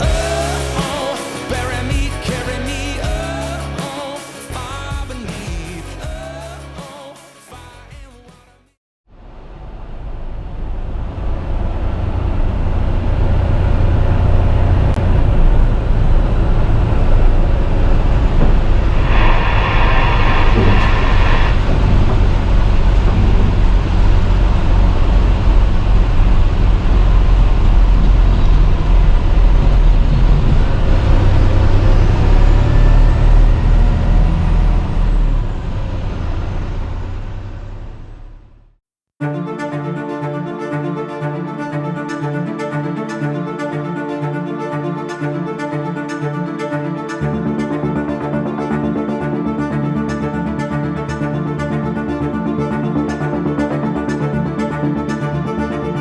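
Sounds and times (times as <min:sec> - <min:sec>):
truck engine and road rumble: 0:09.1 - 0:38.8
brief multi-pitch horn tone: 0:18.9 - 0:23.5.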